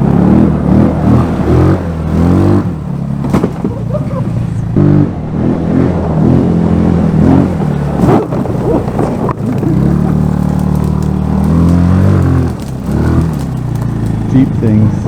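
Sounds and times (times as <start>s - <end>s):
scooter engine running under throttle: 8.0s - 14.4s.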